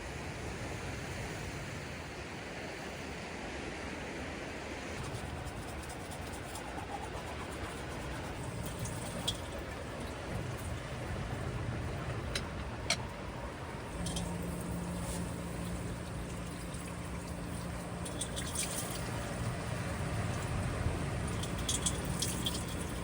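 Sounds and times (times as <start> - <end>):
low steady hum: 5.0 - 23.0
water trickling and dripping: 5.0 - 23.0.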